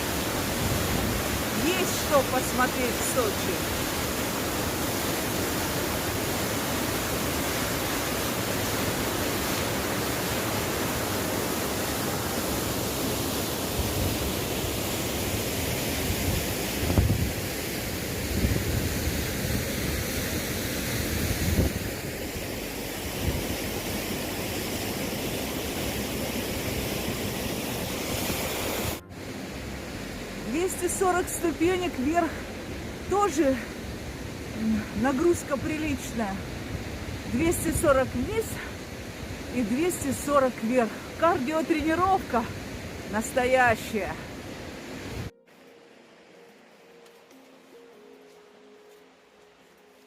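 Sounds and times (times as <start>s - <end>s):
waterfall roaring: 0.0s - 49.2s
wind buffeting microphone: 16.1s - 17.5s, 21.2s - 22.2s.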